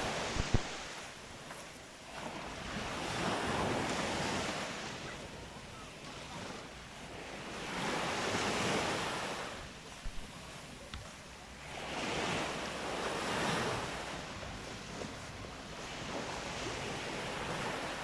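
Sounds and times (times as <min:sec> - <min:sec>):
wind on microphone: 0:00.0 - 0:01.1
waves breaking on beach: 0:00.0 - 0:18.0.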